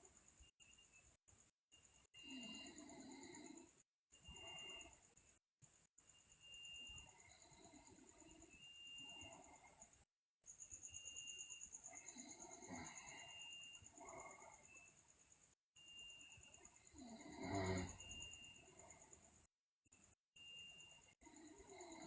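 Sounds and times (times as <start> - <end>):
sleeping person breathing: 16.7 - 19.0.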